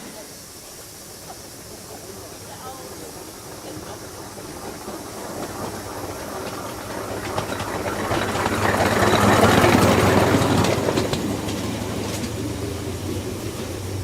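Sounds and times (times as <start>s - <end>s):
miniature steam train running: 0.0s - 14.0s
wheels clicking over rail joints: 0.6s - 14.0s.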